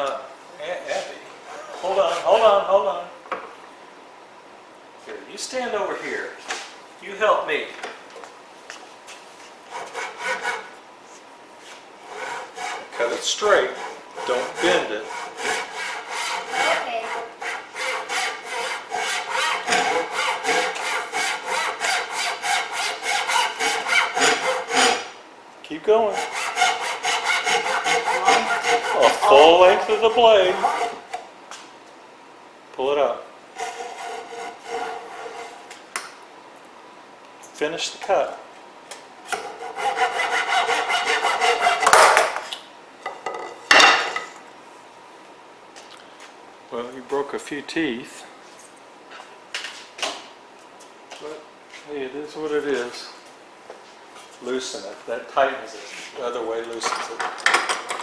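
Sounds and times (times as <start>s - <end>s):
saw cutting wood: 9.7s - 10.8s, 12.0s - 25.2s, 26.1s - 31.2s, 33.6s - 35.8s, 39.3s - 42.2s.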